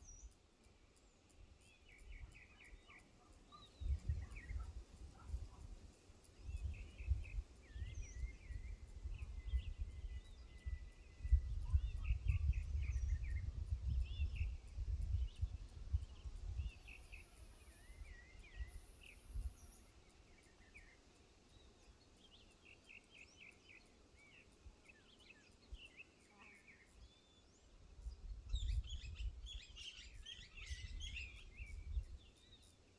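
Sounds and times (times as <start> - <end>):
birds chirping: 0.0 - 27.8
wind buffeting microphone: 3.8 - 17.1, 28.0 - 32.3.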